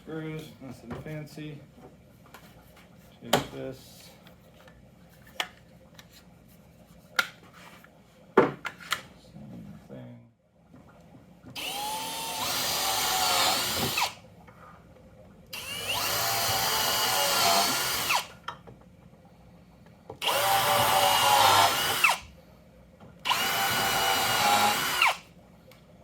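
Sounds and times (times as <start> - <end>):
power drill driving screws into wood: 11.6 - 14.2, 15.6 - 18.3, 20.2 - 22.3, 23.2 - 25.2.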